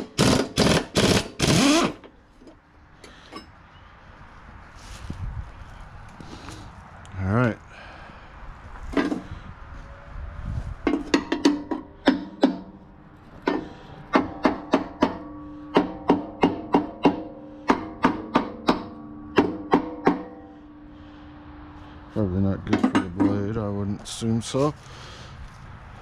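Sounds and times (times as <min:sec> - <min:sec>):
hammer striking ringing steel deck: 0:13.5 - 0:20.8.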